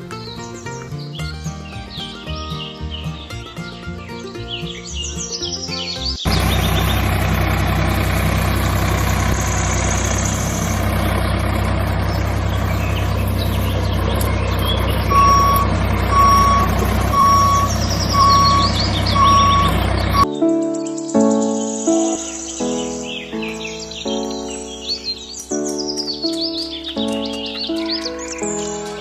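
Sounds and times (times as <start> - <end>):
diesel engine running: 6.3 - 20.3
reversing alarm beeping: 11.6 - 20.3.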